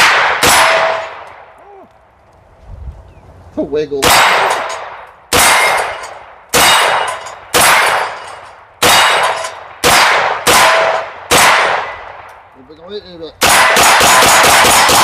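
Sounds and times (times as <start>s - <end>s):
gunshots with ringing echo: 0.0s - 1.6s, 4.0s - 12.3s, 13.4s - 15.0s.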